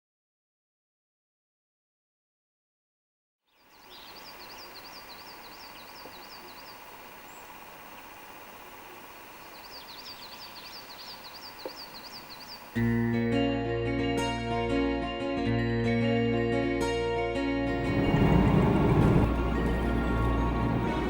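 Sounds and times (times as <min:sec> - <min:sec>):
songbird singing: 0:03.5 - 0:12.9
outdoor background hum: 0:03.6 - 0:13.3, 0:17.7 - 0:21.0.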